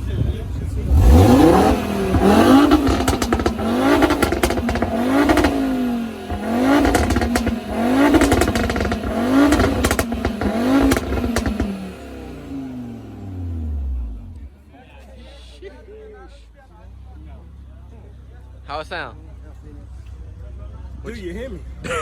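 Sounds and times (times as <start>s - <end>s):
car engine revving: 0.0s - 14.6s
exhaust crackles: 0.0s - 14.7s.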